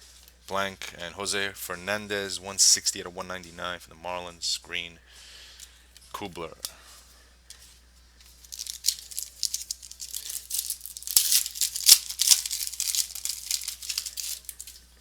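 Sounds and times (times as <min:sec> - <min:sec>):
wrapper crinkling and tearing: 0:08.4 - 0:14.9.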